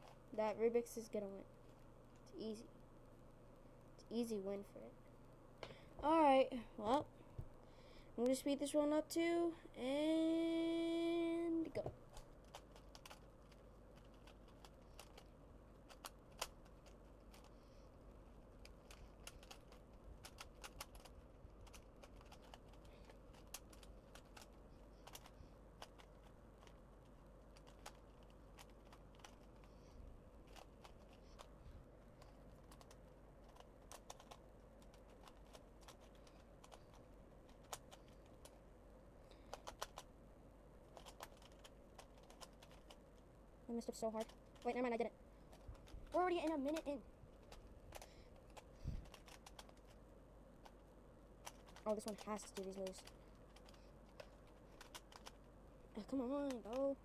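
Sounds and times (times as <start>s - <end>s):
puzzle cube clicking: 12.1s - 17.5s, 18.2s - 26.8s, 27.5s - 29.6s, 32.2s - 38.6s, 39.4s - 40.1s, 40.9s - 43.1s, 44.1s - 50.0s, 51.4s - 55.5s, 56.1s - 57.0s.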